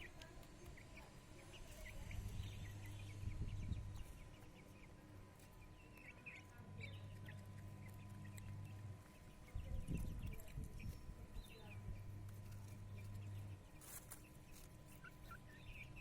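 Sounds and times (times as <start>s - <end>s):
chicks cheeping: 0.0s - 16.0s
low steady hum: 0.0s - 16.0s.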